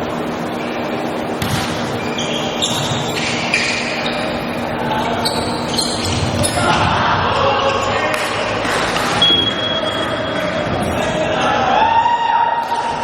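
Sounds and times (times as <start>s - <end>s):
crowd murmur: 0.0s - 13.0s
shoes squeaking on court: 0.4s - 6.9s, 8.8s - 11.6s
volleyball struck and bouncing: 1.4s - 2.0s.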